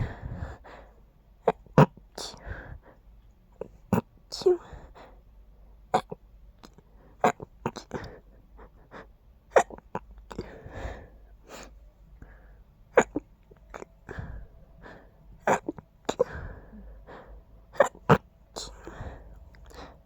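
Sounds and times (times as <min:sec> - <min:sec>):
person stifled sneezing: 0:09.5 - 0:10.6, 0:12.9 - 0:14.4, 0:15.4 - 0:16.7, 0:17.7 - 0:19.2
breathy inhales: 0:13.7 - 0:20.0.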